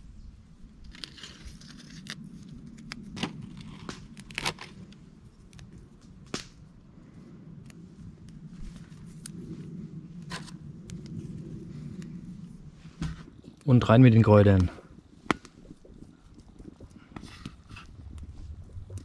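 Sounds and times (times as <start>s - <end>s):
low steady background: 0.0s - 19.0s
herbs being torn by hand: 0.9s - 6.6s.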